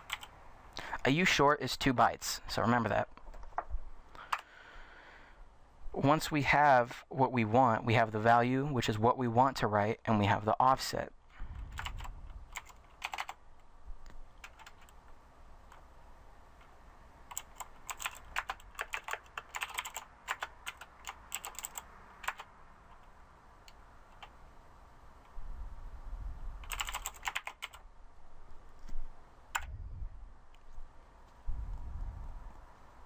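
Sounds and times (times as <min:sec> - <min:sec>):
computer keyboard typing: 0:00.0 - 0:00.3, 0:04.3 - 0:04.5, 0:11.7 - 0:13.4, 0:14.4 - 0:15.0, 0:17.3 - 0:24.4, 0:26.6 - 0:27.8, 0:29.5 - 0:29.7.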